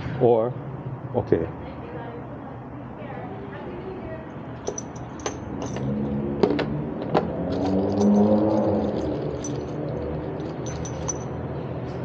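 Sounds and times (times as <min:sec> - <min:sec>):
vehicle engine passing by: 0:05.3 - 0:12.0.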